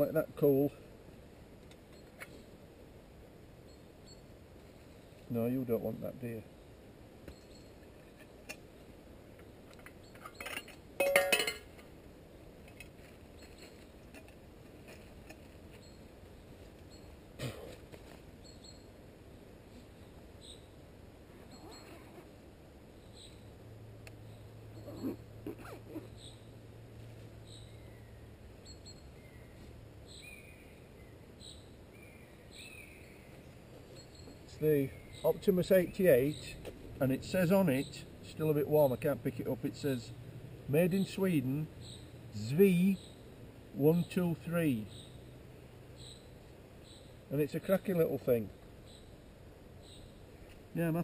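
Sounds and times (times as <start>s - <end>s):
metal cookware clinking and rattling: 10.4s - 11.7s.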